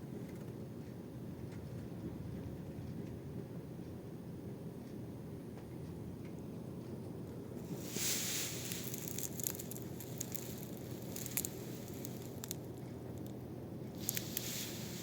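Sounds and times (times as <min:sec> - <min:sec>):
air conditioner humming: 0:00.0 - 0:15.0
soft rustling and hiss: 0:06.8 - 0:15.0
small clicks: 0:07.7 - 0:13.4, 0:14.0 - 0:15.0.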